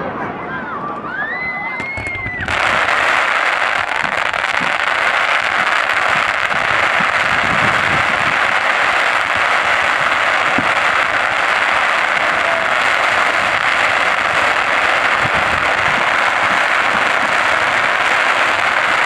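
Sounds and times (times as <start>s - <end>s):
fireworks crackling: 1.8s - 19.0s.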